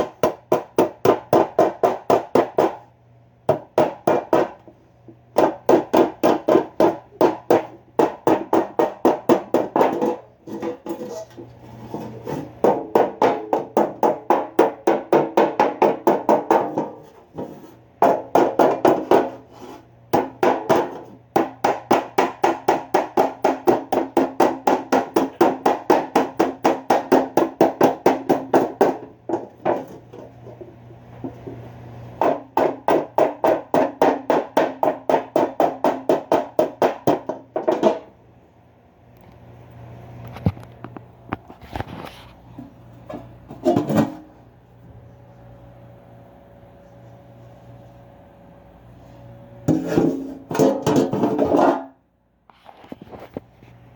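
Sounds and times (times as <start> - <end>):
hammer beating on metal pan: 3.5 - 4.6, 5.4 - 10.3, 12.6 - 17.0, 20.1 - 30.0, 32.2 - 38.1.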